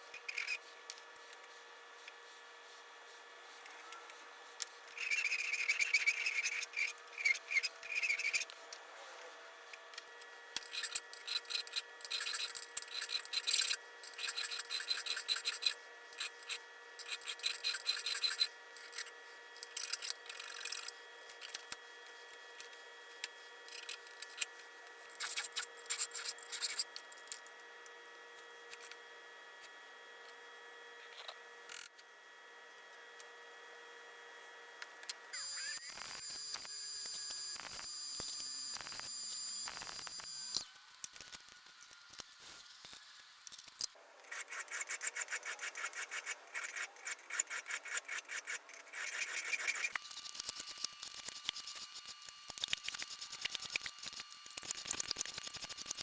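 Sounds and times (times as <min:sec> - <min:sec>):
hand rubbing and scraping metal: 0:04.8 - 0:08.5, 0:10.6 - 0:26.9.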